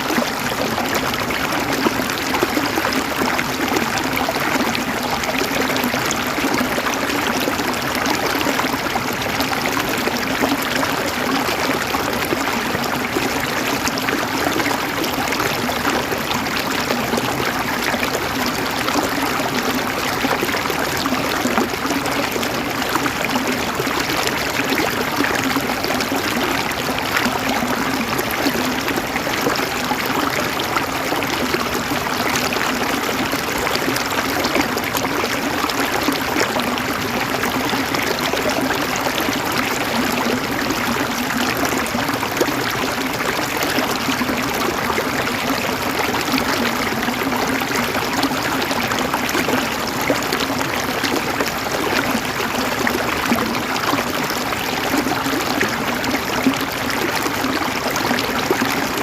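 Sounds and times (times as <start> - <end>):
river water babbling over stones: 0.0 - 59.0.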